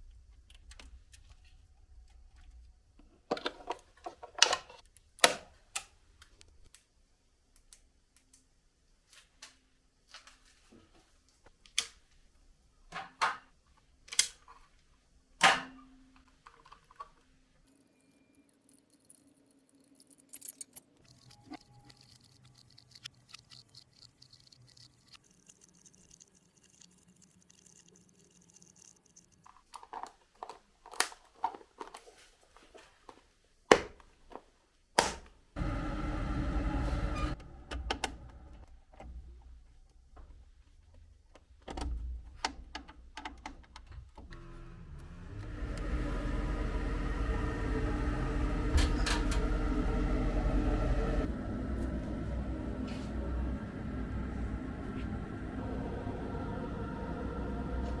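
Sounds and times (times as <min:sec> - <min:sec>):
faint steady hum: 0:44.2 - 0:58.0.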